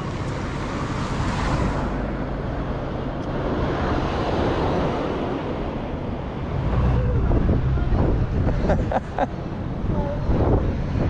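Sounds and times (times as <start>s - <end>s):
road and traffic noise: 0.0s - 11.0s
wind on microphone: 2.8s - 11.0s.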